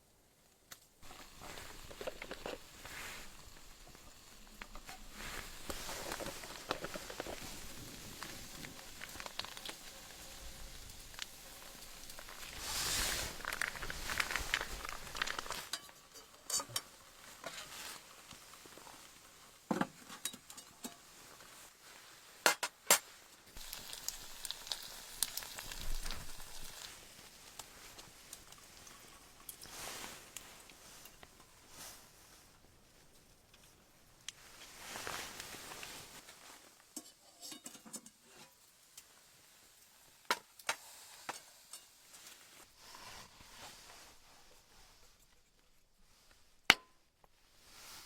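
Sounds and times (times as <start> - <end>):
utensil clicks and scrapes: 0.7 - 17.7
food sizzling in a pan: 1.0 - 22.2, 23.5 - 32.0, 34.7 - 45.2.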